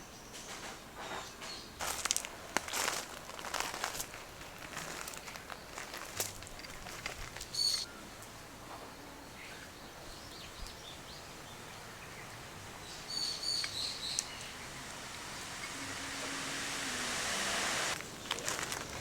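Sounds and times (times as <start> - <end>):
outdoor ambience: 0.0 - 19.0
birds chirping: 7.5 - 8.1, 9.3 - 18.4
hissing noise: 12.4 - 18.0.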